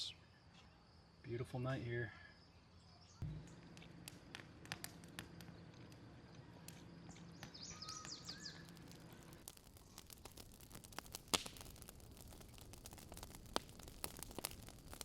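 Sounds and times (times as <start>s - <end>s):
sharp clicks and crackles: 6.6s - 15.0s.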